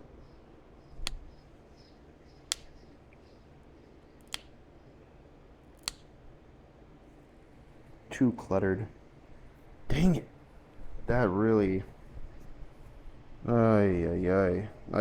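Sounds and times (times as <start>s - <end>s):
sharp clicks of stone flaking: 2.5s - 2.8s, 4.2s - 4.5s, 5.8s - 6.1s.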